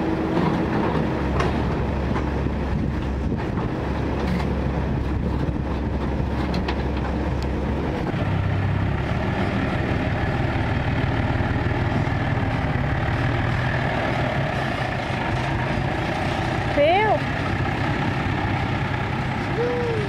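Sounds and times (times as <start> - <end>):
heavy diesel engine running: 0.0 - 20.0.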